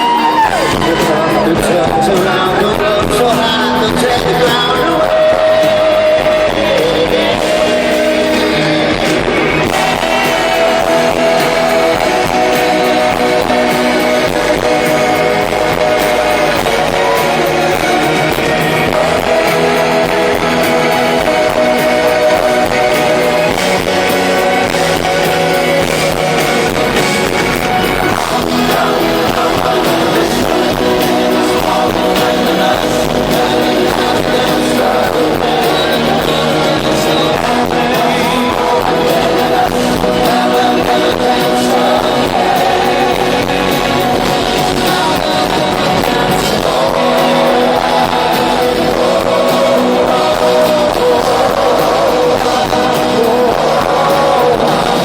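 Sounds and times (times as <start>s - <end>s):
live pop-rock band playing: 0.0s - 55.0s
man singing long notes: 0.0s - 55.0s.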